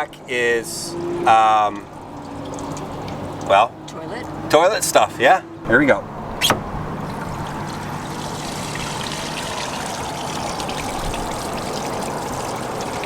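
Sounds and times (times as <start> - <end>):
waste water rushing through hose: 5.8 - 13.0.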